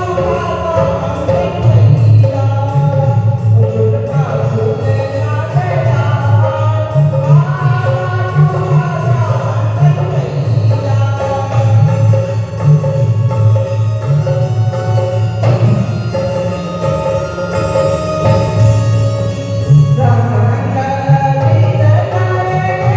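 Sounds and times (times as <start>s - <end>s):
repeating drum beat: 11.3s - 22.0s.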